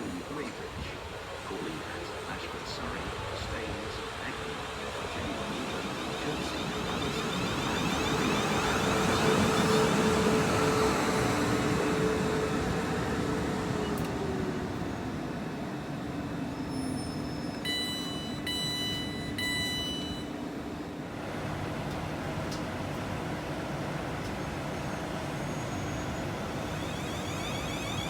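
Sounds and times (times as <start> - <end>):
electric train motor whine: 4.1 - 28.0
door warning beeps: 16.8 - 20.4.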